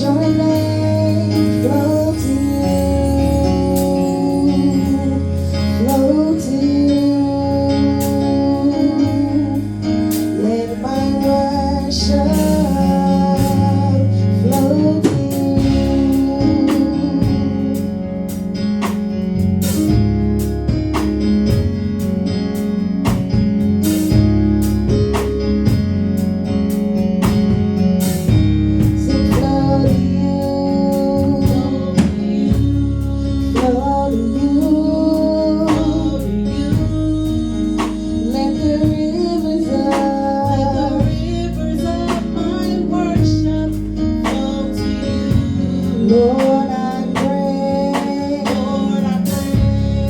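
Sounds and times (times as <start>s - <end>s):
person singing: 0.0s - 18.3s, 29.0s - 50.0s
guitar and bass: 0.0s - 50.0s
keyboard chords: 0.0s - 50.0s
steady drum beat: 10.1s - 50.0s.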